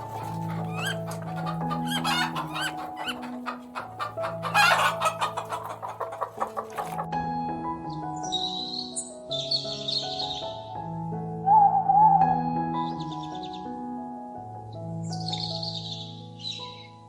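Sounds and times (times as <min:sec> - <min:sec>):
chickens clucking: 0:00.0 - 0:07.1
soft piano music: 0:00.0 - 0:17.0.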